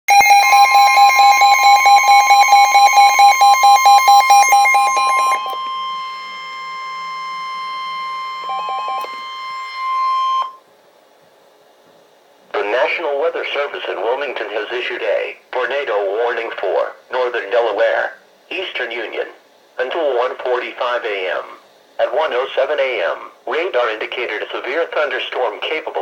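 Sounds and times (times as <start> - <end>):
loud steady alert tone: 0.1 - 10.6
rapid electronic beeping: 0.1 - 10.6.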